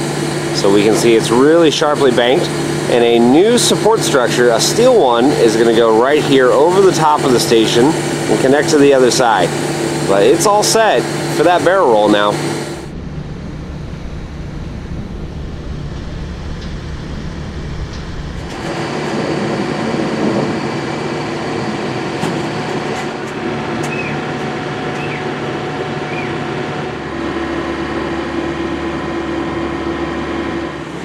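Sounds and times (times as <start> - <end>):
mechanical hum: 0.0 - 31.0.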